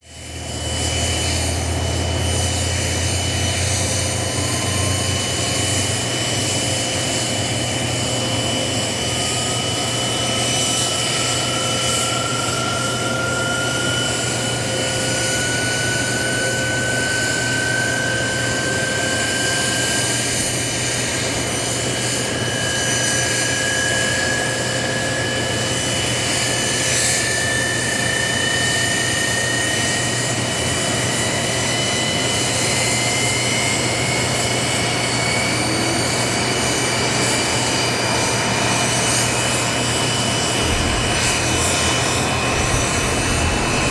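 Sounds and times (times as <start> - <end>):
turbine aircraft engines whining: 0.0 - 43.9
whine rising in pitch: 0.6 - 6.7, 39.3 - 43.9.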